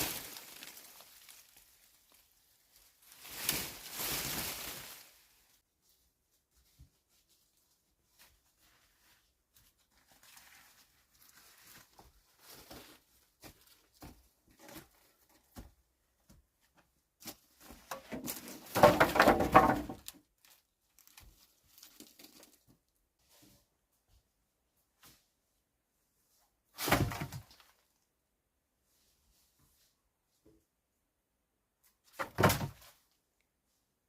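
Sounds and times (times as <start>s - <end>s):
rustling and crinkling: 0.0s - 24.3s.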